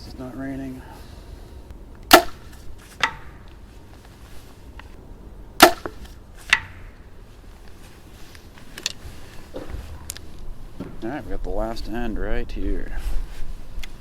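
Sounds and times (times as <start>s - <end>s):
arrow striking target: 2.1s - 3.5s, 5.6s - 7.0s.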